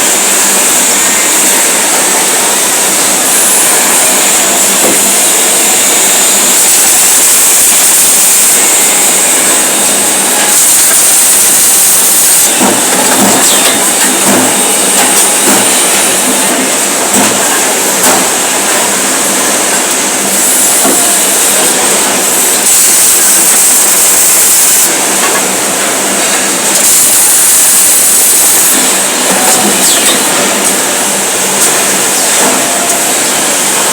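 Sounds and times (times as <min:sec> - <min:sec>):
welding hiss: 0:00.0 - 0:33.9.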